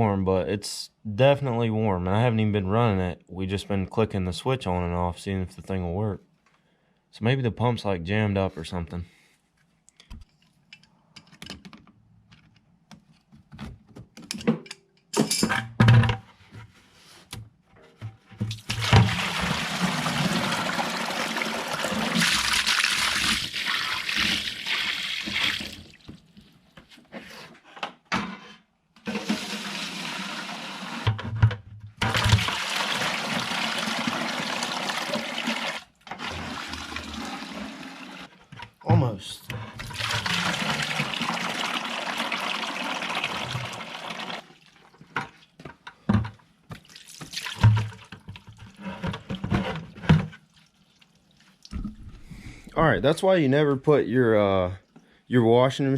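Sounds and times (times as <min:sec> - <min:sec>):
knocks and clinks of parts: 0:14.1 - 0:16.2
water gushing onto floor: 0:18.5 - 0:26.1, 0:32.1 - 0:38.3, 0:39.8 - 0:44.8.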